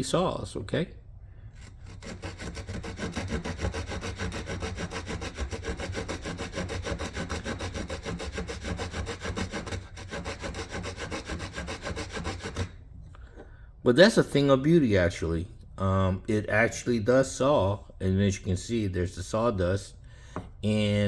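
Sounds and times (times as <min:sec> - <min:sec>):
small saw cutting wood: 0:01.6 - 0:12.8.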